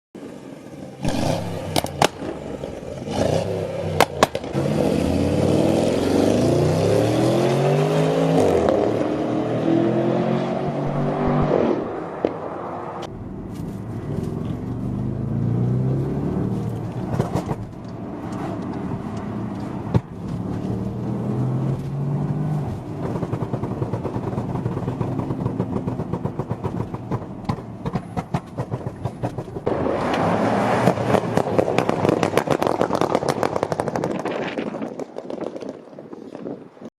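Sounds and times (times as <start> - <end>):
exhaust pops and crackles: 1.0 - 3.0, 4.0 - 4.6, 16.6 - 21.0, 21.7 - 30.2, 30.8 - 36.8
car engine revving: 1.0 - 33.7.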